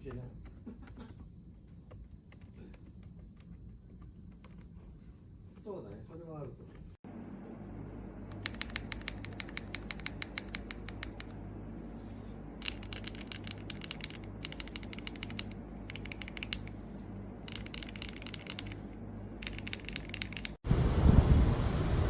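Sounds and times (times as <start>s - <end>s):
low steady hum: 0.0s - 22.0s
mechanical keyboard clicking: 8.3s - 11.3s, 12.6s - 16.7s, 17.5s - 18.8s, 19.4s - 20.6s.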